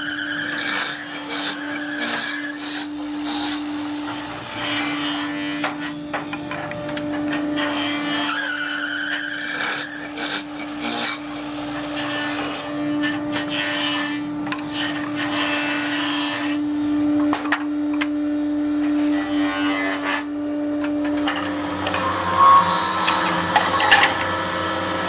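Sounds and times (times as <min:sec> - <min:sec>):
workshop machine humming: 0:20.6 - 0:25.0
wood scraping against machine: 0:20.8 - 0:25.0.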